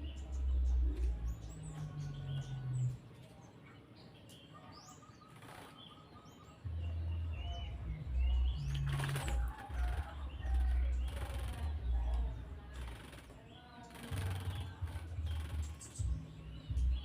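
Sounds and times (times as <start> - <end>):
faint bird chirps: 0.0 - 17.0
bird wings flapping: 5.3 - 5.9, 8.7 - 11.8, 12.7 - 15.9.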